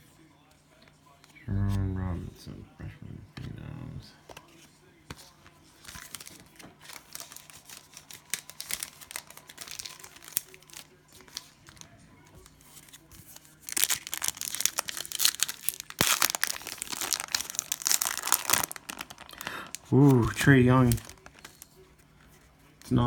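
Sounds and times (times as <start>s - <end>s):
cellophane wrapper crinkling: 5.8s - 21.7s.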